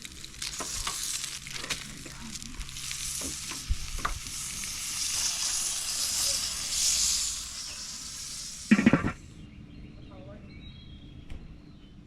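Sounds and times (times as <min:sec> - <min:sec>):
food sizzling: 0:00.0 - 0:09.2
sharp knock: 0:08.7 - 0:09.2.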